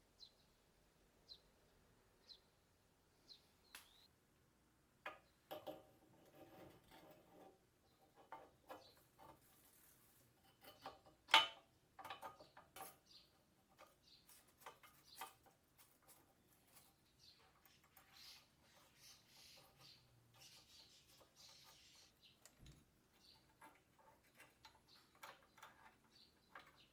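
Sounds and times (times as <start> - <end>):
faint bird chirps: 0.0 - 4.2, 12.4 - 15.4, 16.7 - 26.9
light clicks and knocks: 5.0 - 9.5, 22.4 - 26.9.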